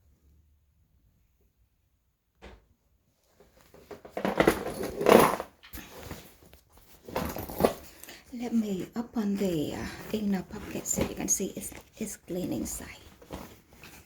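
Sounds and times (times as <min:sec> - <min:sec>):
leather handbag rustling: 0:03.6 - 0:14.0.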